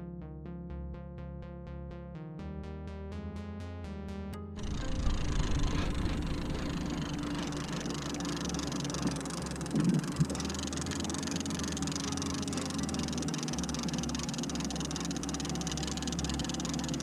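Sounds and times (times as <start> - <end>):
boat motor humming: 4.6 - 17.0.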